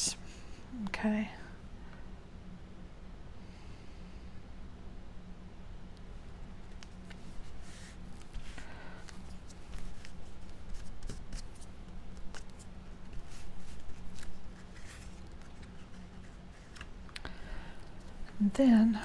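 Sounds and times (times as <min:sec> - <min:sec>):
paper rustling: 0:06.6 - 0:18.4.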